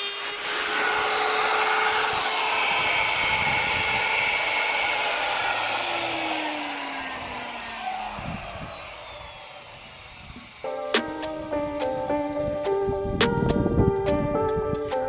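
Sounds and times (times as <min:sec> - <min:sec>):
power tool motor winding down: 0:00.0 - 0:13.7
music: 0:10.7 - 0:15.0.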